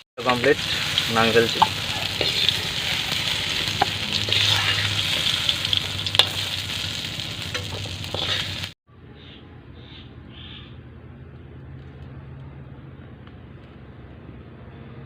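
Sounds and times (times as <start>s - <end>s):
potatoes sizzling in oil: 0.2s - 8.8s
spatula scraping pan: 0.3s - 6.5s, 7.5s - 8.7s.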